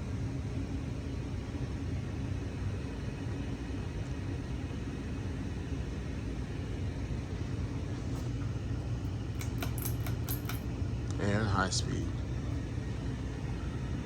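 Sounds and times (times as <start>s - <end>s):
ceiling fan motor hum: 0.0s - 14.0s
sharp clicks: 9.4s - 10.6s.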